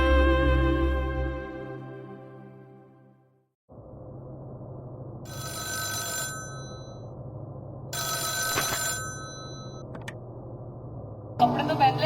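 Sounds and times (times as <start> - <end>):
steady low hum: 3.7 - 5.4, 6.3 - 8.1, 9.0 - 12.0
telephone ringing: 5.3 - 7.1, 8.0 - 9.9.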